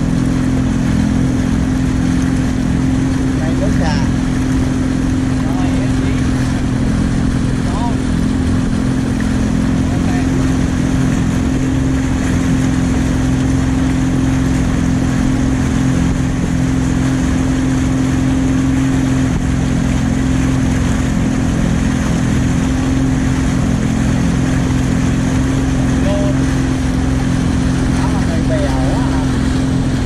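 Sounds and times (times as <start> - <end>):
boat motor running: 0.0 - 30.0.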